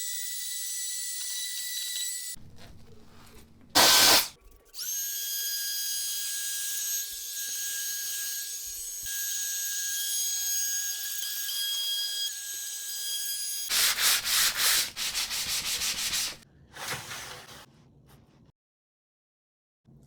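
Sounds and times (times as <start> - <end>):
sanding strokes on wood: 13.7 - 16.4.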